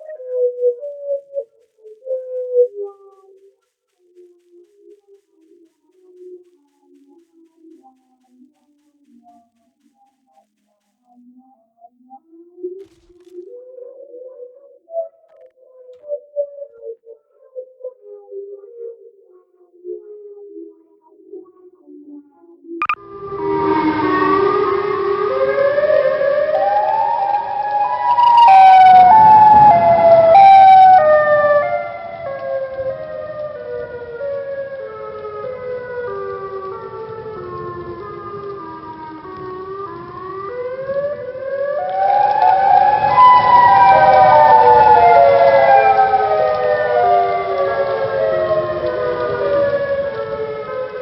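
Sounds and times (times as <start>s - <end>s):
layered siren tones stepping in pitch: 22.8s - 51.0s.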